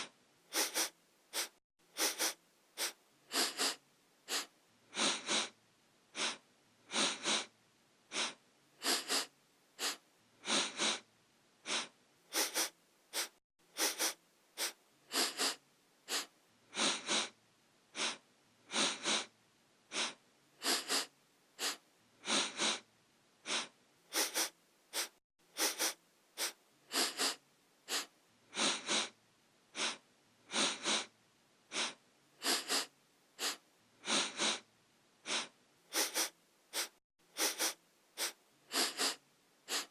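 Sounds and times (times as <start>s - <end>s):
person sniffing: 0.0s - 7.5s, 8.1s - 19.3s, 19.9s - 39.9s.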